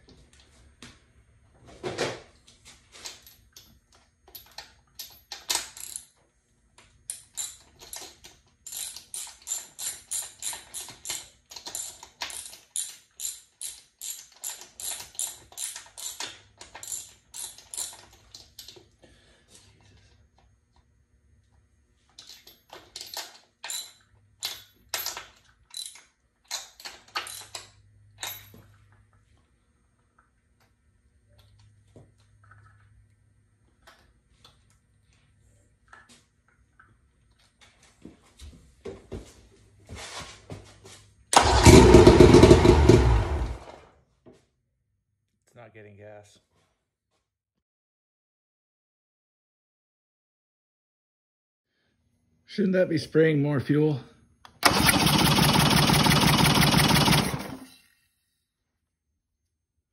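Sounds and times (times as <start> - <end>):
ratchet wrench clicking: 7.1 - 18.2.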